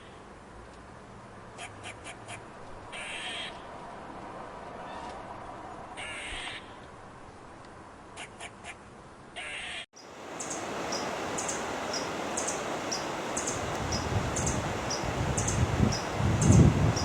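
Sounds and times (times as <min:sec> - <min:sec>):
bird harsh raspy calls: 0:01.6 - 0:03.6, 0:09.4 - 0:09.8
steady rustling hiss: 0:10.0 - 0:17.0.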